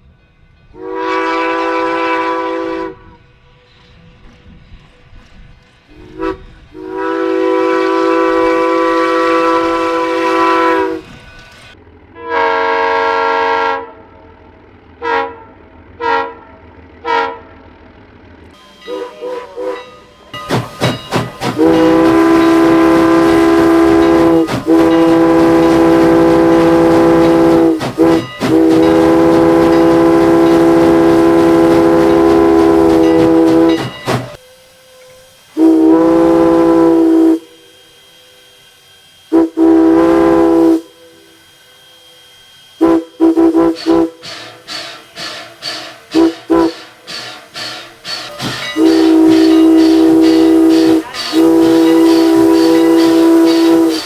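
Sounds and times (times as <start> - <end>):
train horn blasts: 0.7 - 3.2, 5.9 - 11.1, 12.1 - 14.2, 15.0 - 17.6, 18.6 - 20.2, 21.4 - 38.4, 39.2 - 41.3, 42.8 - 44.3, 46.1 - 46.9, 48.5 - 54.0
train wheels clattering: 19.9 - 35.3, 42.8 - 54.0.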